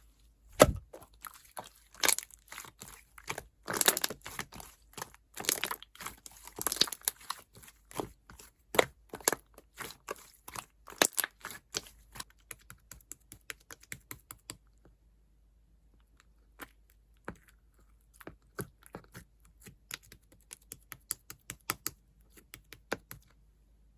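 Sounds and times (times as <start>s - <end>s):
slime squished crackling: 0.6s - 8.1s.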